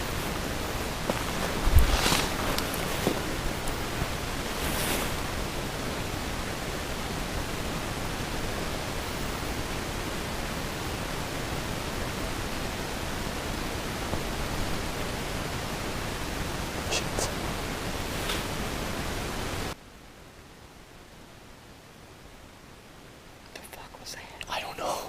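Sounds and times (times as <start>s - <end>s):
steady outdoor hiss: 0.0s - 25.0s
brief rustle: 1.3s - 3.8s, 18.2s - 18.6s.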